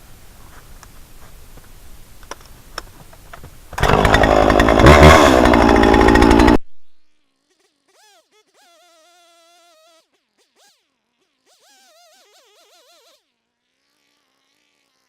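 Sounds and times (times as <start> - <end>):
faint clicks and rustles: 0.3 - 3.8
chainsaw running at high revs: 3.8 - 6.6.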